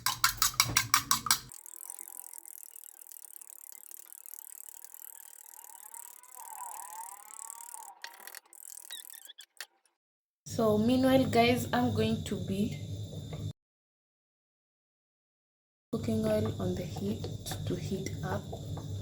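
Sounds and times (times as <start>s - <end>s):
whisking egg clicking against dish: 0.0s - 9.7s.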